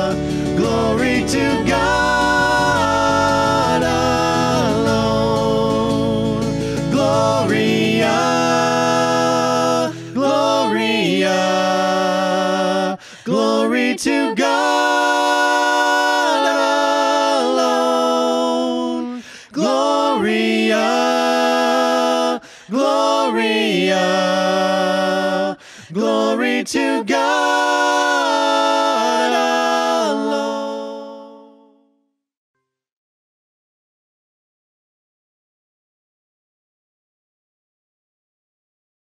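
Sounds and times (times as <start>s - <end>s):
low instrumental accompaniment: 0.0s - 9.5s
band singing worship song: 0.0s - 31.5s.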